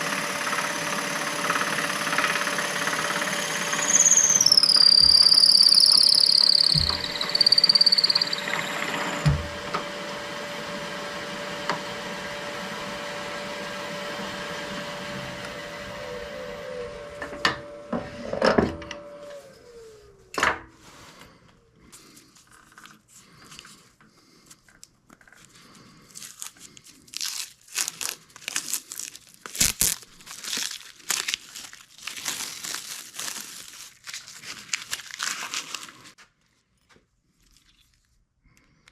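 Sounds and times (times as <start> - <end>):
lathe spinning down: 0.0 - 20.2
lathe motor hum: 0.0 - 20.3
turning tool squealing on wood: 0.1 - 9.6
scratchy crackling and rustling: 24.5 - 36.2.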